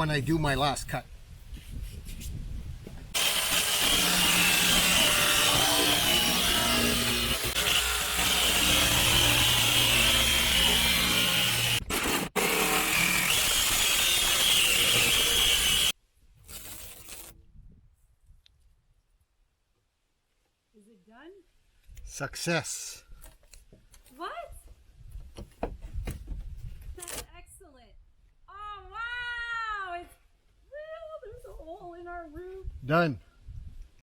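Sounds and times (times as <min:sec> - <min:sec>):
jigsaw cutting sheet metal: 0:03.1 - 0:17.4.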